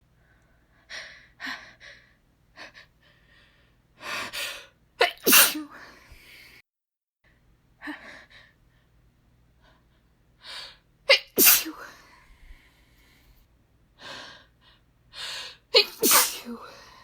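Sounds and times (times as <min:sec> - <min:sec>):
woman sneezing: 0:05.0 - 0:05.8, 0:11.1 - 0:12.0, 0:15.8 - 0:16.7.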